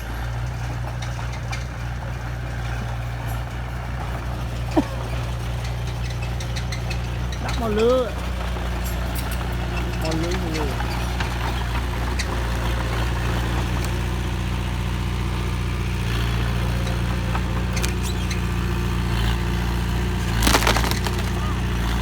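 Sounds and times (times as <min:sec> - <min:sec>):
heavy diesel engine droning: 0:00.0 - 0:22.0
loud clatter: 0:16.2 - 0:22.0.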